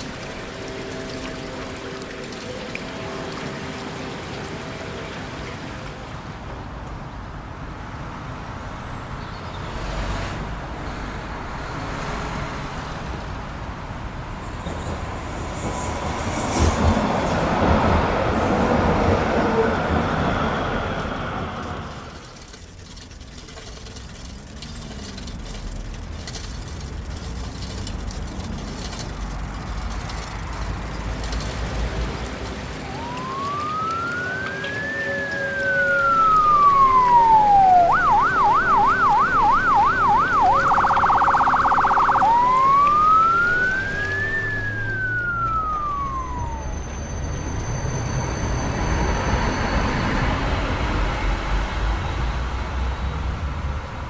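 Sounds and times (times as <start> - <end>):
emergency vehicle siren: 0.0 - 6.5, 14.2 - 22.6, 31.2 - 54.0
traffic noise: 0.0 - 54.0.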